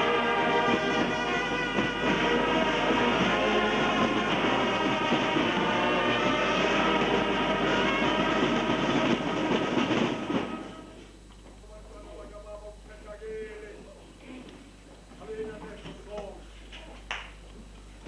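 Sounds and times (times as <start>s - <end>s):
music with rhythmic clatter: 0.0s - 11.0s.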